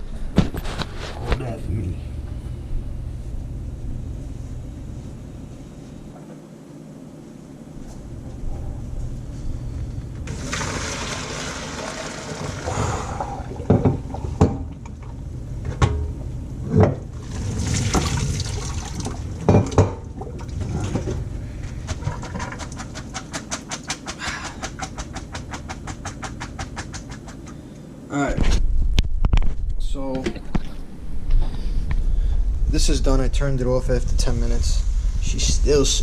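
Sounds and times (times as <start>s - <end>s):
water pouring into a sink: 10.3s - 14.4s, 17.1s - 21.2s
rapid tapping: 21.8s - 27.6s.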